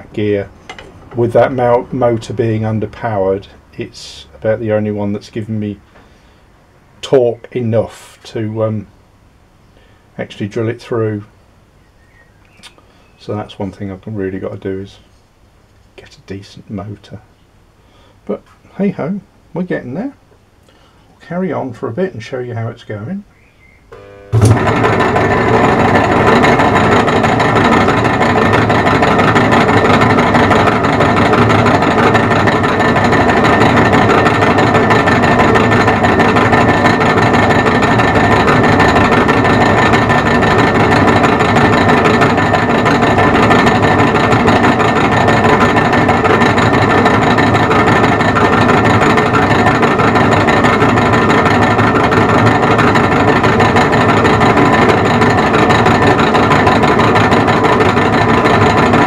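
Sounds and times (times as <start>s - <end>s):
lathe humming: 0.0s - 4.1s, 23.9s - 59.0s.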